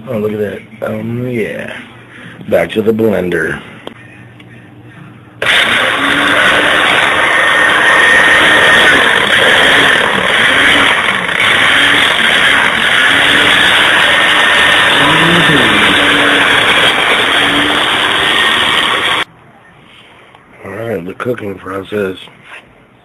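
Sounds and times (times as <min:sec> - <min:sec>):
blender motor whirring: 0:05.4 - 0:19.3.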